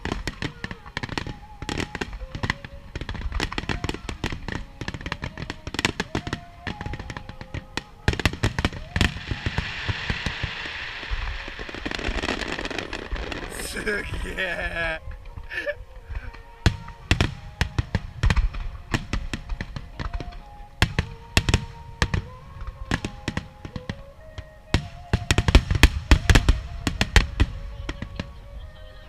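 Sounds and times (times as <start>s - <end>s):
music with long held notes: 0.0s - 29.0s
firework shells bursting: 8.2s - 15.0s.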